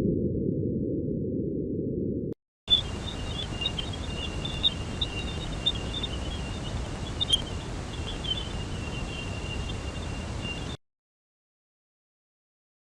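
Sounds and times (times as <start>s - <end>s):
electronic chirps: 2.7s - 10.8s
low hiss: 2.7s - 10.8s
thin high tone: 2.7s - 10.8s.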